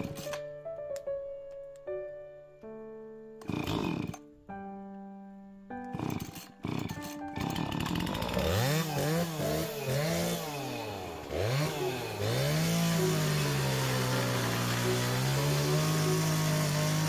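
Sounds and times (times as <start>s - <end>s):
chainsaw engine revving: 3.4s - 4.3s, 5.9s - 17.0s.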